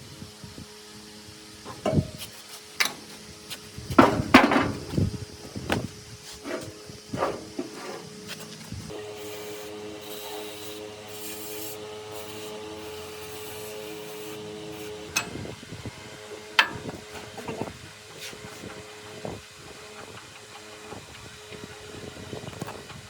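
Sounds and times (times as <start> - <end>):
small motor humming: 0.0 - 23.0
scraping and knocks: 3.9 - 8.9.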